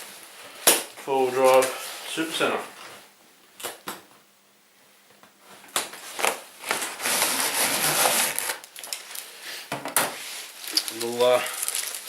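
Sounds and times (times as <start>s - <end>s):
scraping and rustling packaging: 5.9s - 9.4s, 10.1s - 12.0s.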